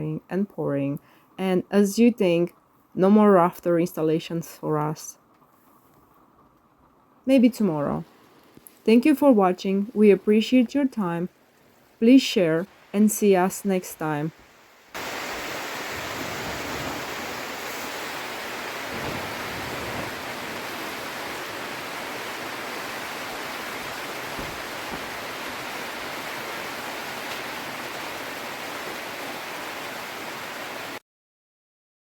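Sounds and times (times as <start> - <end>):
steady rain: 5.2 - 8.9, 11.2 - 31.0.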